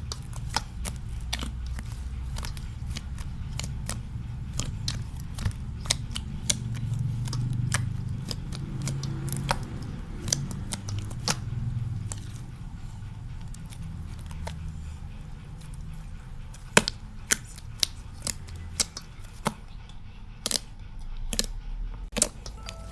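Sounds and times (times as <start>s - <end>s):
slime squishing with clicks and pops: 0.0s - 12.5s, 16.5s - 19.7s, 20.4s - 20.7s, 21.3s - 22.9s.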